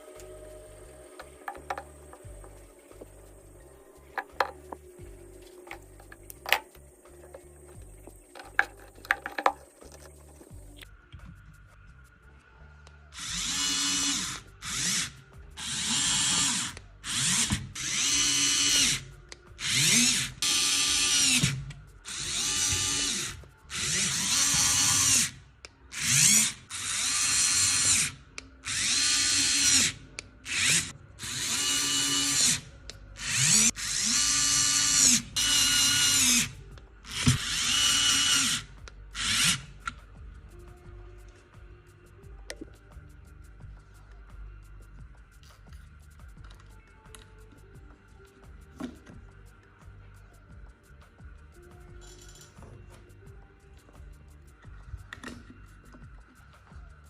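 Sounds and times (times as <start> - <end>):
drill motor bursts: 13.2 - 19.0, 19.6 - 25.3, 26.0 - 29.9, 30.5 - 32.6, 33.2 - 36.5, 37.1 - 38.6.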